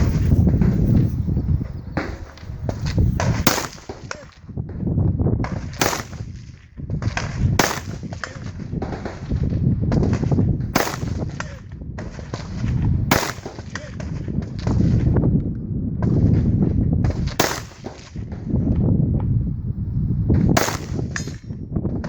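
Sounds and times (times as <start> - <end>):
low rumble of wind: 0.0 - 22.0
rifle gunshots: 2.0 - 4.4, 5.5 - 15.0, 17.1 - 18.5, 20.5 - 21.5.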